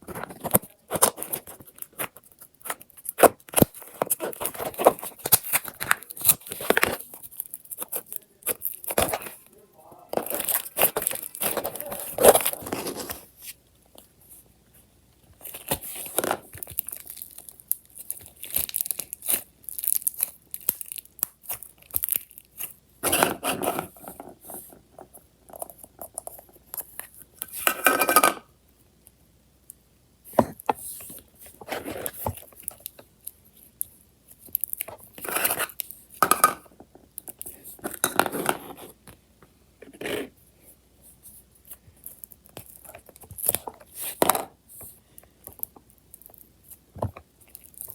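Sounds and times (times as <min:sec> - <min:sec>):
slime crackling and popping: 0:00.4 - 0:09.3, 0:10.3 - 0:12.6, 0:15.4 - 0:22.8, 0:31.9 - 0:36.0, 0:42.0 - 0:44.2, 0:45.4 - 0:47.9.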